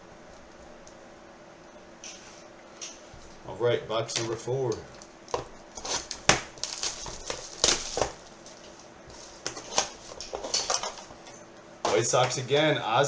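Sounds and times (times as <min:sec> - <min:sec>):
plastic wrap crinkling and tearing: 0:05.4 - 0:11.1.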